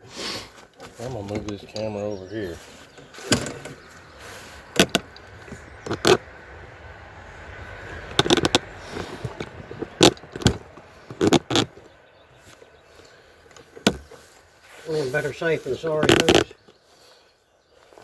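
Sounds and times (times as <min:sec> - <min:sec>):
objects knocking and clicking: 0:04.7 - 0:06.2, 0:08.1 - 0:11.8.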